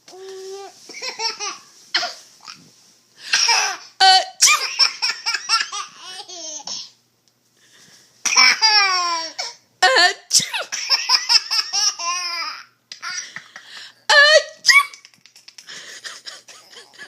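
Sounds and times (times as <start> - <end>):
baby laughing: 0.9 - 2.1, 3.3 - 6.8, 8.3 - 9.6, 10.6 - 13.7, 14.3 - 17.0.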